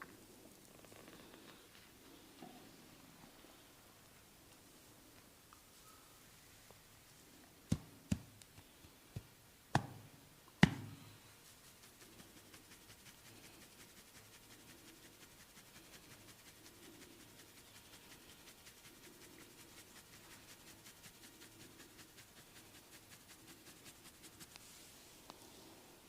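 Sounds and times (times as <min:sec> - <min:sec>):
hands smacking head: 0:07.7 - 0:11.0
soft rubbing: 0:10.7 - 0:26.0.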